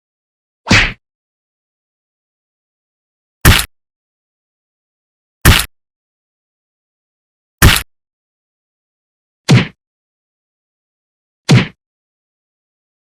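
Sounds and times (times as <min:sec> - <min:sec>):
punch impact whack: 0:00.7 - 0:01.0, 0:03.4 - 0:03.7, 0:05.4 - 0:05.7, 0:07.6 - 0:07.8, 0:09.5 - 0:09.8, 0:11.5 - 0:11.8.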